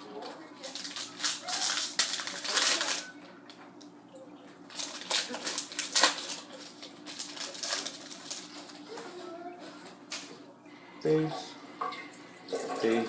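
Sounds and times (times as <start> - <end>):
wrapper rustling: 0.2 - 3.3, 4.7 - 10.4.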